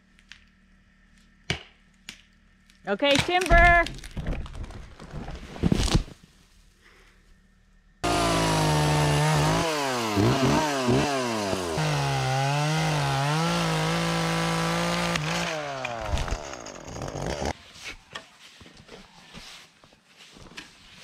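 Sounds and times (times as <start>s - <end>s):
chainsaw engine revving: 8.0s - 17.5s.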